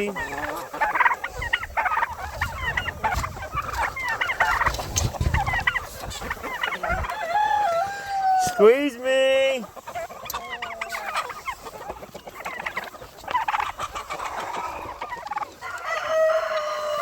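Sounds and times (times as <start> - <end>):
chickens clucking: 0.0 - 17.0.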